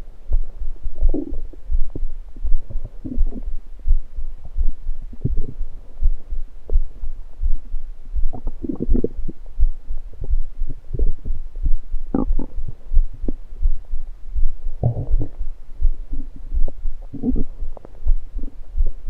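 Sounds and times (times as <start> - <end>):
low pulse thumping: 0.0 - 19.0
stomach gurgling: 1.0 - 3.5, 5.1 - 5.7, 8.3 - 9.5, 12.1 - 13.4, 14.8 - 15.4, 16.1 - 18.6.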